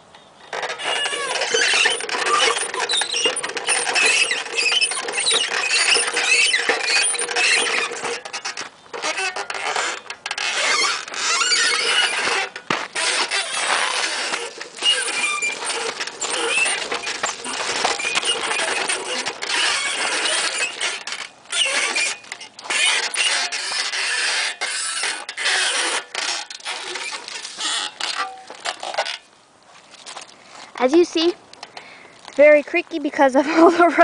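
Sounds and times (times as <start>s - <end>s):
rusty metal squeaking: 0.4s - 29.3s.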